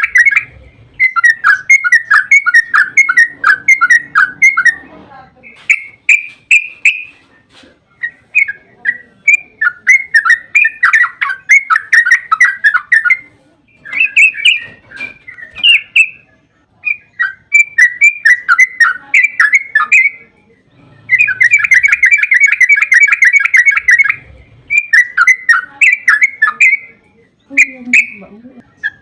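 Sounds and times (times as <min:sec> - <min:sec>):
bird singing bubbly notes: 0:00.0 - 0:04.9, 0:20.9 - 0:29.0
bird rapid trill: 0:00.0 - 0:07.3, 0:08.0 - 0:20.2, 0:20.8 - 0:29.0.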